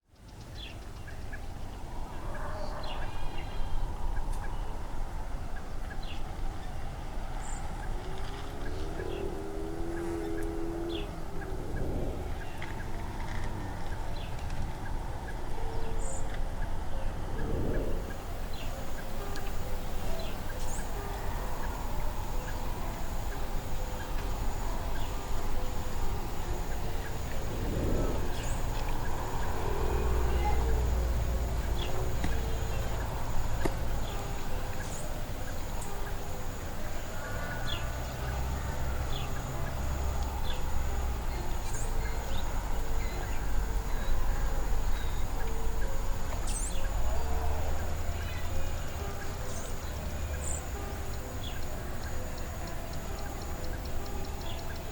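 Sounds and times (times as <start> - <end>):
wind rumble on microphone: 0.0 - 54.9
high-pitched insect drone: 17.6 - 54.9.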